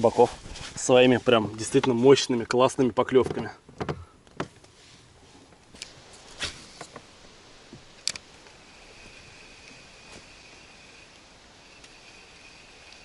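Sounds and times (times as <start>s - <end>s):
sharp clicks and knocks: 7.7s - 8.3s.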